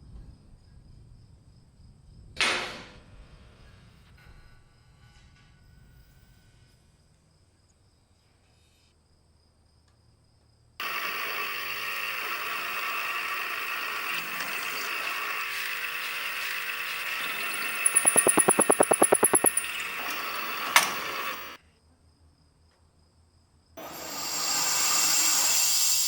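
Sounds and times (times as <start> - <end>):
workshop machine whirring: 10.8 - 21.6
machine rattling clicks: 17.5 - 19.8.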